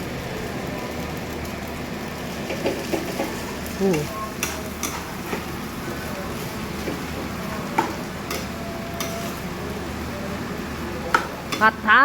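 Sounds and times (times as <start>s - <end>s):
food sizzling in a pan: 0.0s - 12.0s
spatula clacking against pan: 4.0s - 5.5s, 7.7s - 9.3s, 11.1s - 11.8s.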